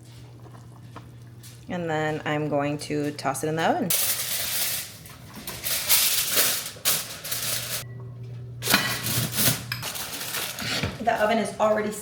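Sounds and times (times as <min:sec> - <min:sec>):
kitchen rustling and clattering: 0:02.8 - 0:07.8, 0:08.6 - 0:12.0.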